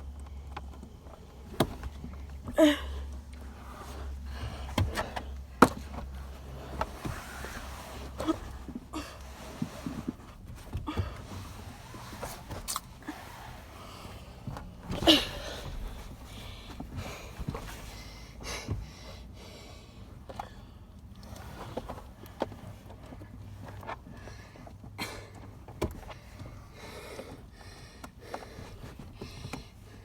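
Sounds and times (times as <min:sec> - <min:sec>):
car seat clicks and knocks: 0:00.6 - 0:02.6, 0:03.7 - 0:08.9, 0:14.3 - 0:18.9, 0:25.7 - 0:26.5.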